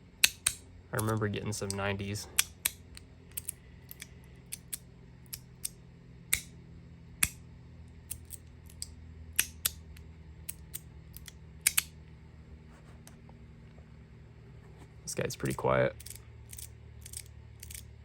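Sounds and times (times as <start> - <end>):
sharp metallic clicks of fidget toy: 0.2 - 6.6, 8.1 - 11.9, 15.4 - 17.9.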